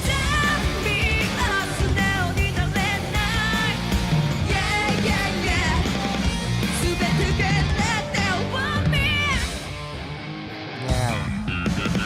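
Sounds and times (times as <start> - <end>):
woman singing: 0.0 - 6.0, 6.8 - 9.6
hard rock music: 0.0 - 12.0.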